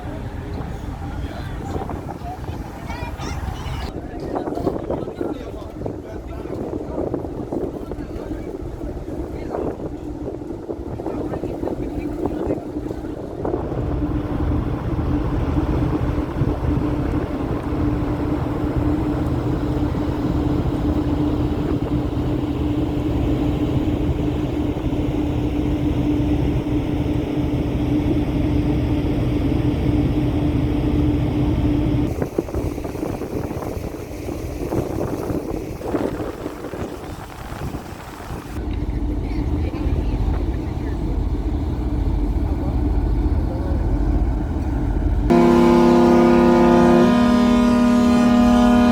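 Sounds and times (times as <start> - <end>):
ferry engine drone: 0.0 - 48.9
mid-pitched hum: 11.0 - 48.9.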